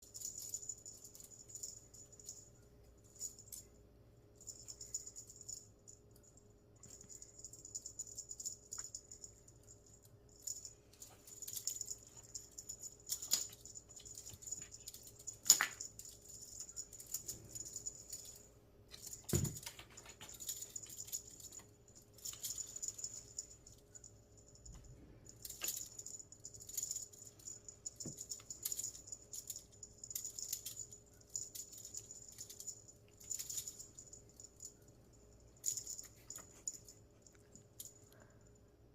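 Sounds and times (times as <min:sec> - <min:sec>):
cat toy rattling and jingling: 0:00.0 - 0:38.2.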